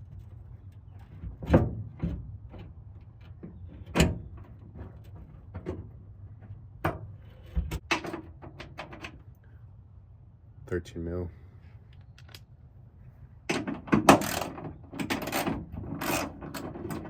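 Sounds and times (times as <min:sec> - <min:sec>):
tools and parts knocking: 0:07.8 - 0:09.1, 0:13.5 - 0:17.0.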